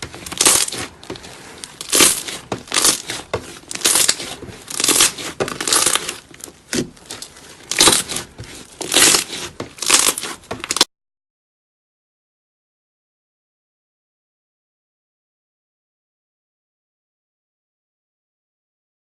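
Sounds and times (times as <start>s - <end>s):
slime squelching: 0.0s - 10.9s.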